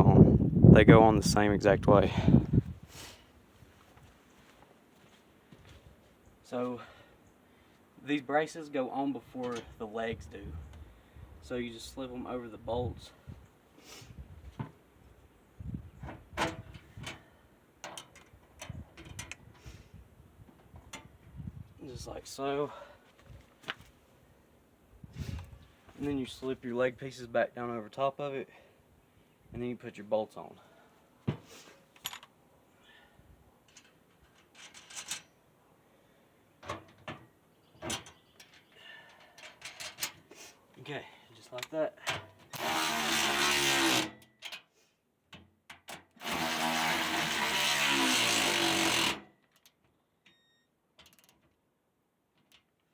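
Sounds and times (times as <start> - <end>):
metal wheelbarrow parts clanking: 9.2 - 9.9, 33.7 - 35.4, 37.8 - 40.2
metal bolts clicking and clinking: 33.7 - 35.4, 37.8 - 40.2.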